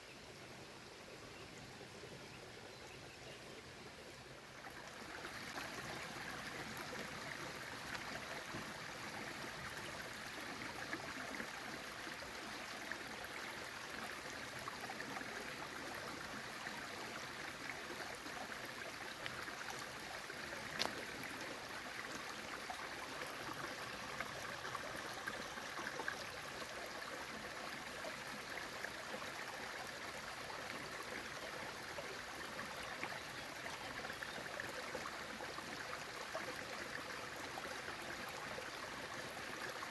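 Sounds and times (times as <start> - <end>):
waterfall and stream splashing: 4.2 - 39.9.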